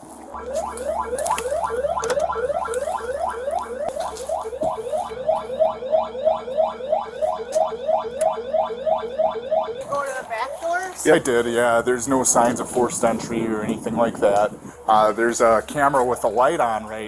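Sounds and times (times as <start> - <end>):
burglar alarm siren whooping: 0.3 - 10.7.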